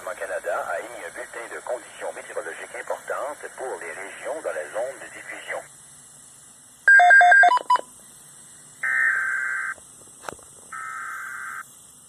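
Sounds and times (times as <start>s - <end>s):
buzzing data bursts: 8.8s - 9.8s, 10.7s - 11.7s.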